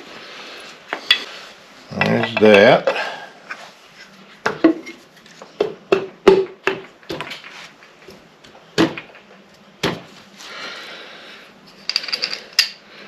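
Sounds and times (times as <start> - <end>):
metal parts clinking: 11.7 - 12.8.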